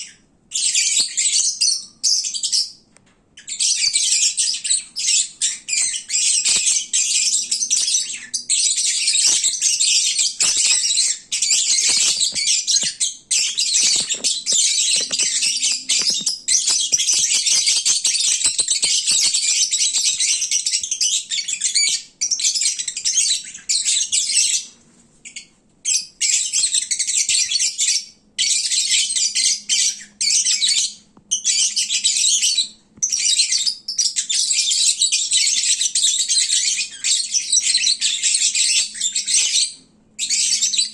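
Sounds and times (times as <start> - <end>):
lovebirds chattering and squawking: 3.4 - 22.1.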